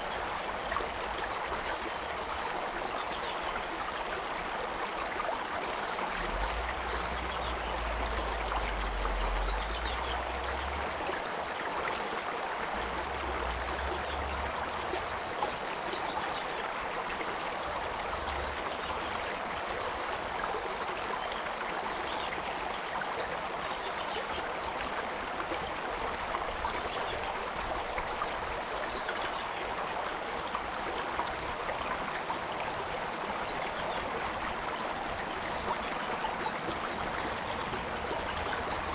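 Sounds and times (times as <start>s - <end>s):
stream flowing: 0.0s - 38.9s.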